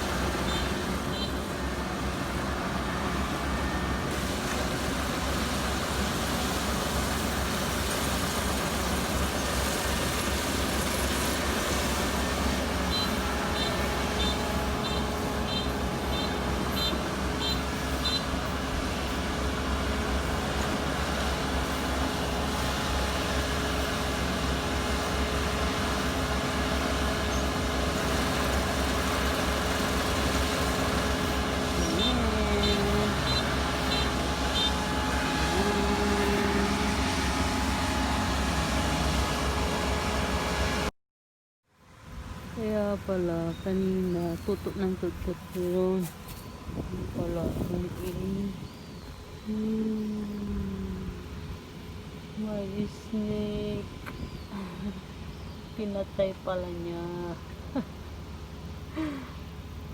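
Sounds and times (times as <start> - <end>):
combine harvester running: 0.0 - 40.9, 41.8 - 59.9.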